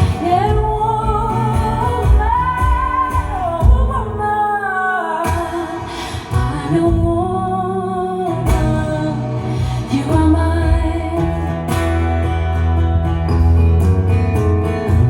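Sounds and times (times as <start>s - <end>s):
acoustic guitar strummed: 0.0s - 15.0s.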